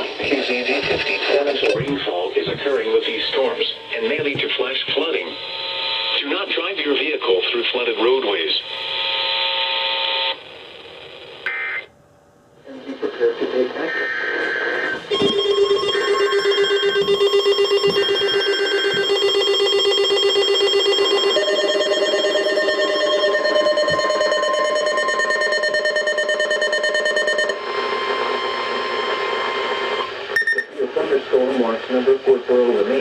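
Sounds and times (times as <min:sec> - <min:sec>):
steady electronic tones: 0:00.0 - 0:06.8, 0:13.7 - 0:31.5.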